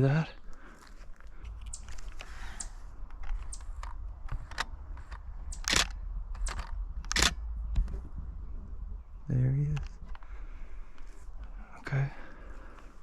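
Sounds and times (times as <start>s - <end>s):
camera handling clicks and rustles: 1.2s - 7.9s, 9.8s - 10.3s
low rumble: 1.3s - 11.9s
camera shutter click: 5.6s - 7.4s.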